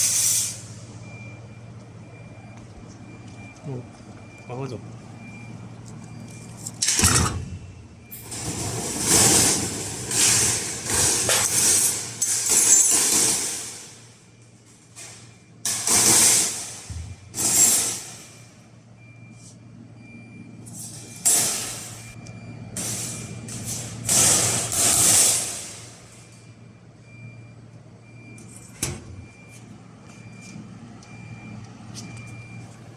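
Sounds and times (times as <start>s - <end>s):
low machine hum: 0.7s - 15.8s.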